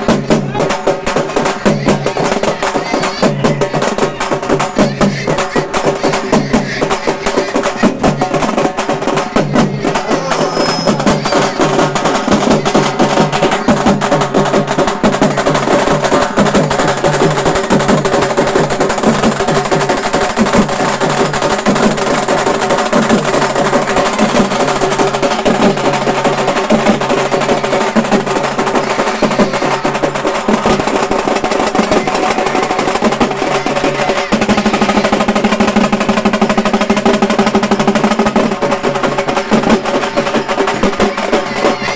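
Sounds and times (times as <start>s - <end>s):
frame drums ringing: 0.0s - 41.9s.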